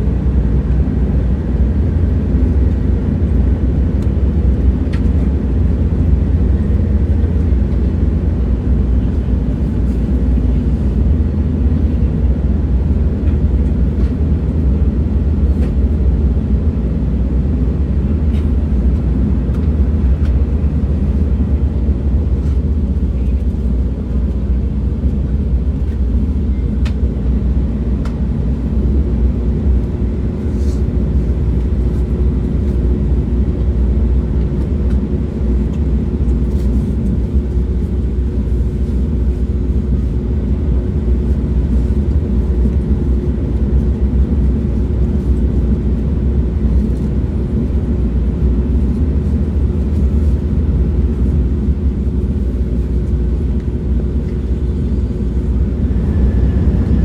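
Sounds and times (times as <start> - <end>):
train rumbling: 0.0 - 57.0.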